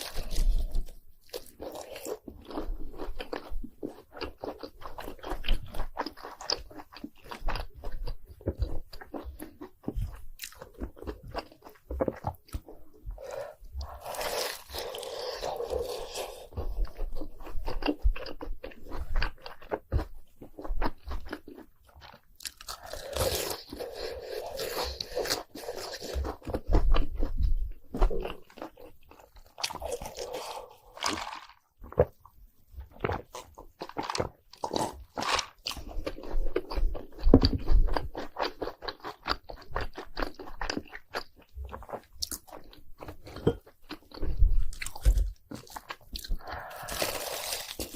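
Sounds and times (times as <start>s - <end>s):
crunching snacks: 28.5s - 32.0s, 44.8s - 47.9s.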